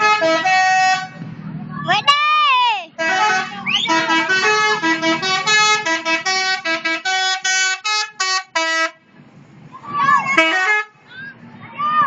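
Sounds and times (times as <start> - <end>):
bus horn playing a melody: 0.0 - 1.2, 3.0 - 9.0, 10.3 - 11.0.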